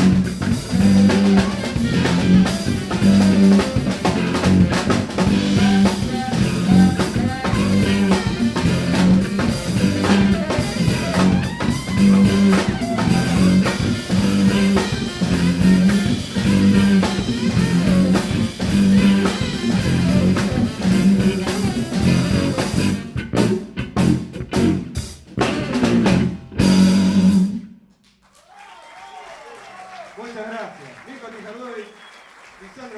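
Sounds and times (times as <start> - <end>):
pulsing bass line: 0.0 - 27.6
jazz band playing live: 0.0 - 27.7
drums: 0.0 - 32.9.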